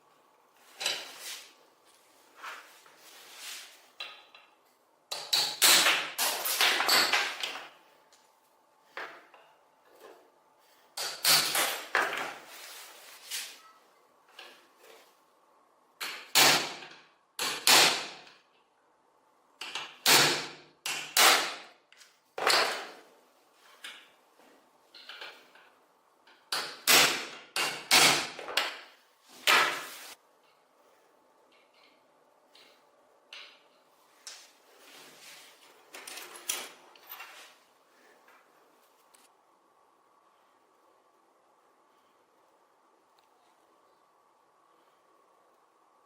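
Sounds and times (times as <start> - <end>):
scraping or rubbing by hand: 0.9 - 1.6, 2.2 - 3.9, 12.4 - 13.8, 29.2 - 30.2, 34.5 - 35.8.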